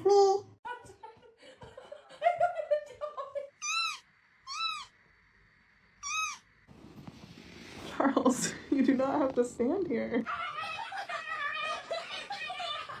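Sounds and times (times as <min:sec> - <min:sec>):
cat meowing: 0:03.6 - 0:05.0, 0:06.0 - 0:06.4.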